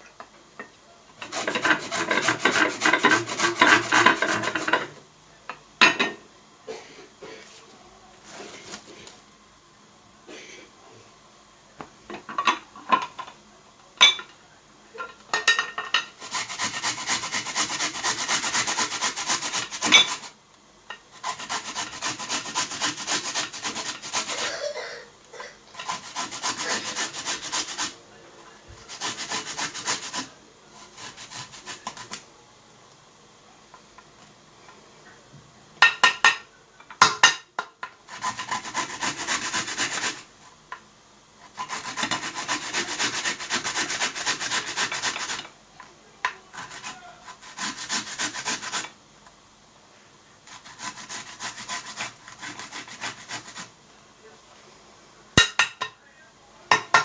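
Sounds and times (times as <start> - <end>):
vegetable grated on a grater: 1.2 - 5.0, 16.2 - 20.4, 21.1 - 24.7, 25.8 - 32.2, 38.0 - 40.6, 41.4 - 45.5, 46.5 - 49.0, 50.4 - 53.7.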